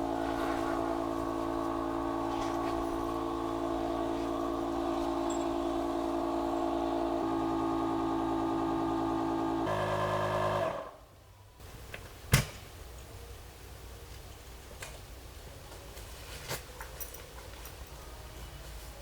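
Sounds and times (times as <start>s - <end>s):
motor running: 0.0s - 11.0s.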